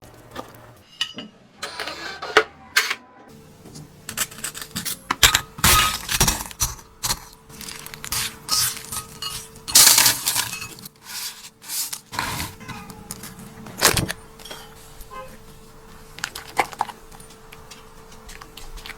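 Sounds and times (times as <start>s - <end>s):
utensils clinking against dishes: 0.3s - 3.0s, 4.1s - 15.3s.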